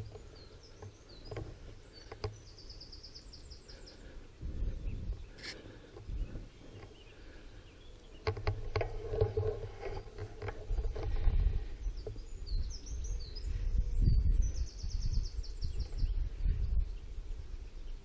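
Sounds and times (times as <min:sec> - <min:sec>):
wind rumble on microphone: 0:00.0 - 0:07.6, 0:08.2 - 0:18.0
small bird chirping: 0:00.0 - 0:18.0
sharp knocks and clicks: 0:00.8 - 0:02.4, 0:08.2 - 0:11.3.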